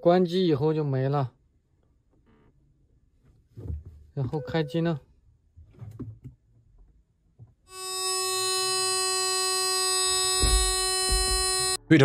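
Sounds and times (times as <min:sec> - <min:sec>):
shrill electronic buzzer tone: 0:04.2 - 0:05.0, 0:07.7 - 0:12.0.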